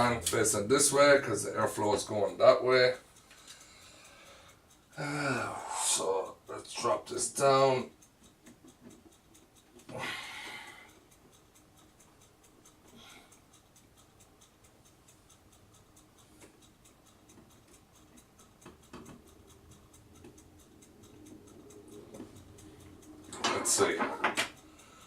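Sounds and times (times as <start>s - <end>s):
small clicks and knocks: 8.0s - 10.0s, 17.3s - 19.3s, 23.1s - 25.0s.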